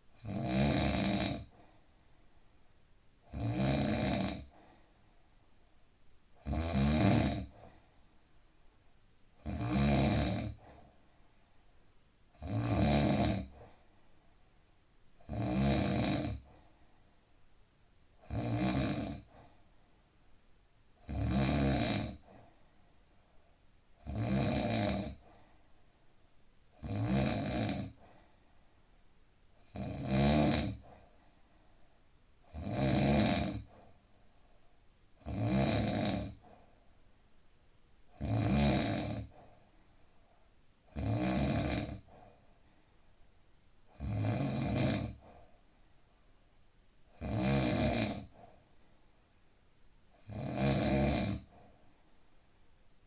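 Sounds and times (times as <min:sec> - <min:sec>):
quiet breathing: 0:00.0 - 0:06.5, 0:07.2 - 0:53.0
man snoring: 0:00.2 - 0:01.5, 0:03.3 - 0:04.5, 0:06.4 - 0:07.6, 0:09.4 - 0:10.6, 0:12.4 - 0:13.6, 0:15.2 - 0:16.5, 0:18.2 - 0:19.3, 0:21.0 - 0:22.3, 0:24.0 - 0:25.2, 0:26.8 - 0:28.0, 0:29.6 - 0:30.9, 0:32.5 - 0:33.7, 0:35.2 - 0:36.4, 0:38.2 - 0:39.3, 0:40.9 - 0:42.1, 0:43.9 - 0:45.3, 0:47.2 - 0:48.4, 0:50.2 - 0:51.6.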